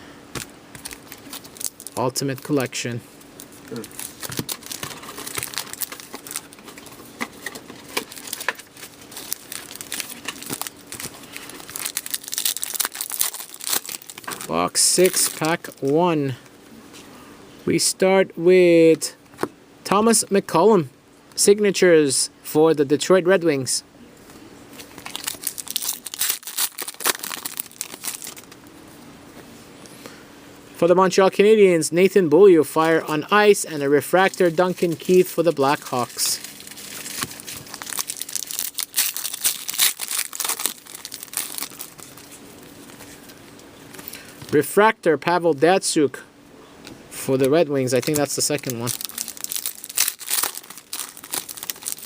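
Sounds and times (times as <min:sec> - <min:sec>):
plastic wrapping crinkling and tearing: 0:00.4 - 0:02.8, 0:03.4 - 0:15.9, 0:24.8 - 0:28.6, 0:34.1 - 0:44.2, 0:47.8 - 0:52.0.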